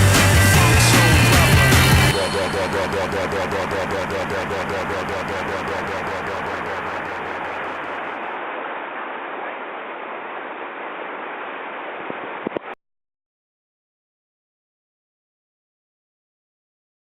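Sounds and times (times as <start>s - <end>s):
fast rhythmic pulsing: 0.0s - 8.2s.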